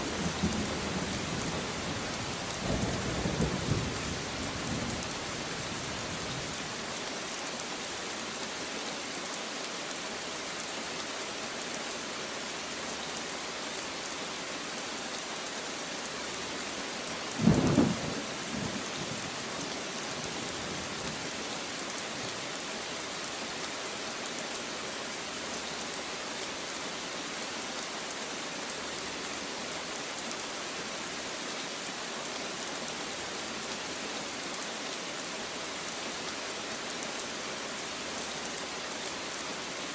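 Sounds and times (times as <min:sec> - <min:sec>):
steady rain falling: 0:00.0 - 0:39.9
thunder clap and rumble: 0:17.4 - 0:18.8.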